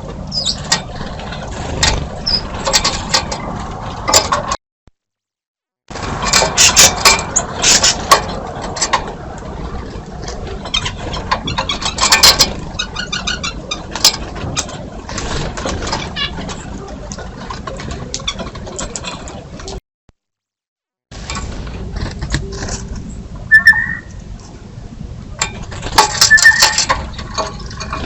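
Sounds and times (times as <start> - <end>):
birds tapping and fluttering: 0.0 - 4.6, 5.9 - 19.8, 25.4 - 28.0
bird calls and chirps: 0.3 - 0.7, 23.5 - 24.2, 26.2 - 26.8.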